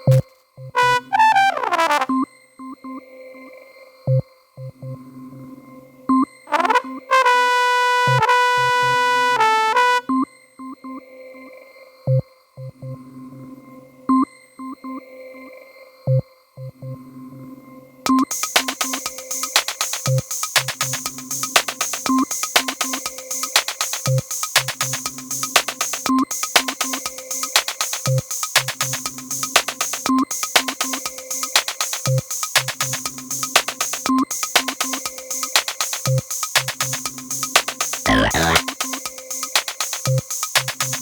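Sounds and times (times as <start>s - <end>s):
looped techno synthesizer pattern: 0.8s - 1.9s, 37.8s - 39.0s.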